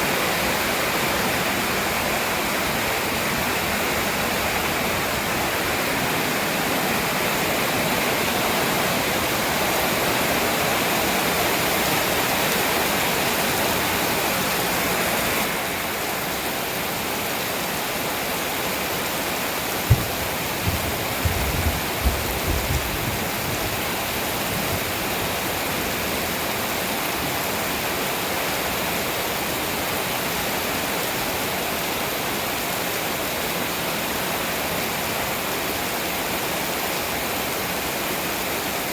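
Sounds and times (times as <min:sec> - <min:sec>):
heavy rain pouring: 0:00.0 - 0:38.9
low thumps: 0:19.8 - 0:23.8.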